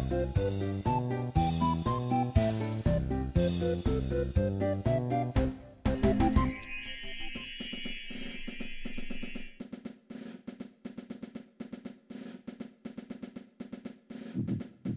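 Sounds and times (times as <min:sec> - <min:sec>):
high glittering shimmer: 0:06.0 - 0:09.6.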